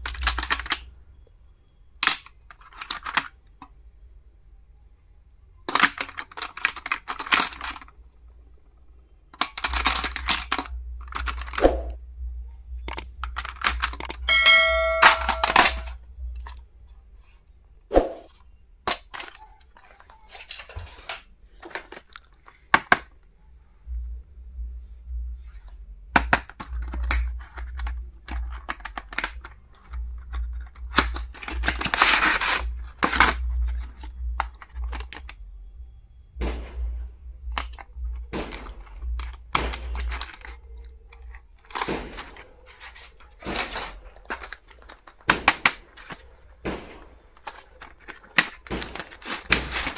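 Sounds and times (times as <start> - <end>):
clicks and taps: 12.8 - 15.9
packaging rustle: 26.4 - 35.4, 37.5 - 49.9.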